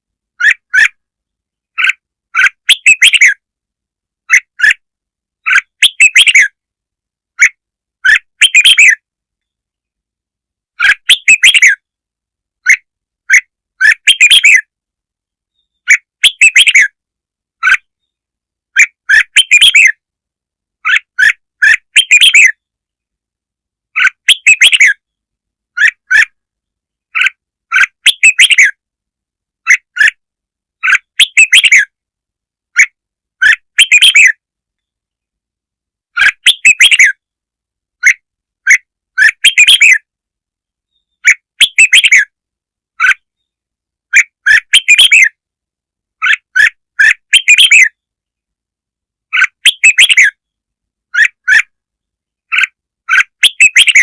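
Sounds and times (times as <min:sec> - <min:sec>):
bulbul chirping song: 0:01.7 - 0:03.4, 0:05.4 - 0:06.6, 0:07.4 - 0:09.1, 0:10.8 - 0:11.9, 0:12.6 - 0:14.7, 0:15.5 - 0:17.0, 0:17.6 - 0:20.0, 0:20.8 - 0:22.7, 0:23.9 - 0:26.4, 0:27.1 - 0:28.8, 0:30.8 - 0:32.0, 0:32.7 - 0:34.4, 0:36.1 - 0:37.2, 0:38.0 - 0:40.1, 0:40.9 - 0:42.3, 0:43.0 - 0:45.4, 0:46.2 - 0:48.1, 0:49.3 - 0:50.5, 0:51.1 - 0:51.8, 0:52.4 - 0:54.0.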